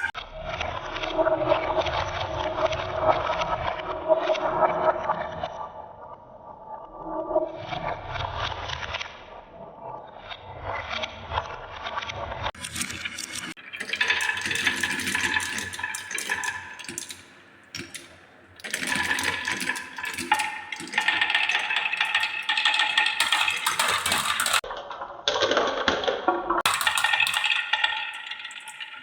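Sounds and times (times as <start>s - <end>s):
marbles rolling down wooden tracks: 12.6s - 24.7s, 26.6s - 29.0s.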